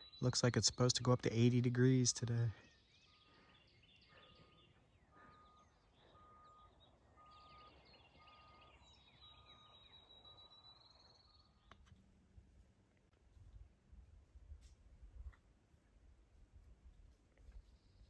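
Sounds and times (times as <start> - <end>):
faint steady beep: 0.0 - 11.7
birds chirping: 0.0 - 13.9
bird whistle with trill: 5.1 - 11.5.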